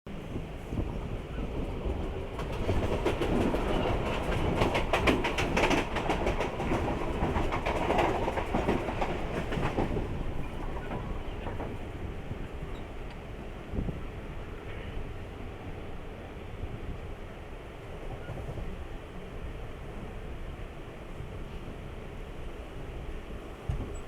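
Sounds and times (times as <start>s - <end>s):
train wheels clattering over rails: 1.5s - 13.2s.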